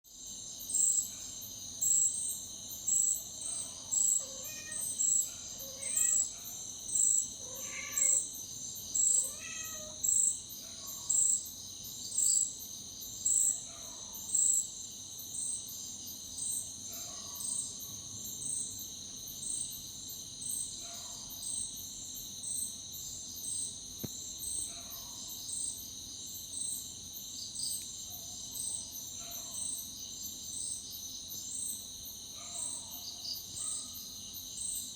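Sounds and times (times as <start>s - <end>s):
insects chirping: 0.1s - 34.9s
cat meowing: 4.2s - 5.0s, 7.4s - 8.3s, 9.2s - 10.0s.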